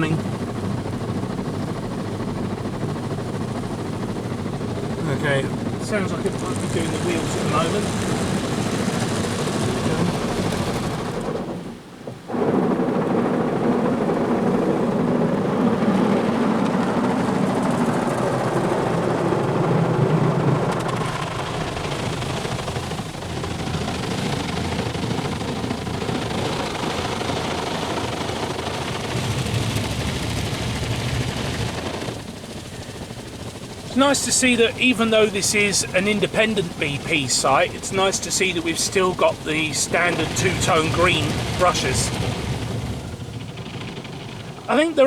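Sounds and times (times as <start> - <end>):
water spraying: 2.9 - 11.5, 20.2 - 45.0
car wash brushes scrubbing: 5.8 - 11.4.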